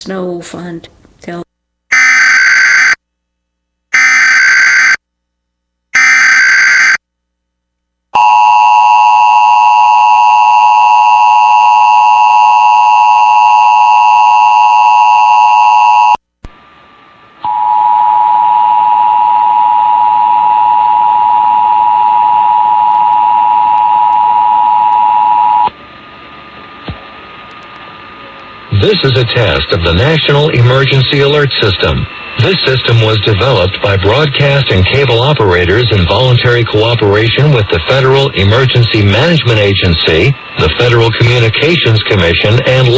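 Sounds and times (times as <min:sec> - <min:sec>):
loud two-tone attention signal: 0:01.9 - 0:03.0, 0:04.0 - 0:05.0, 0:06.0 - 0:07.0.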